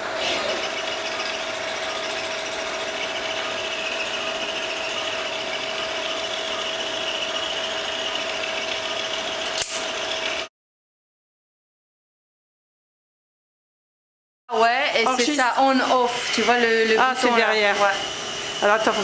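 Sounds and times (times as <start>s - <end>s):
motorized handpiece whine: 0.0s - 10.5s.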